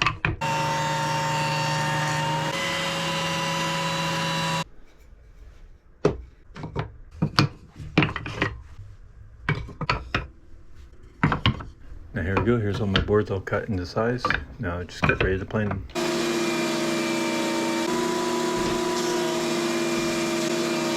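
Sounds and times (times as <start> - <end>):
jointer whining: 0.4 - 4.6, 15.9 - 20.9.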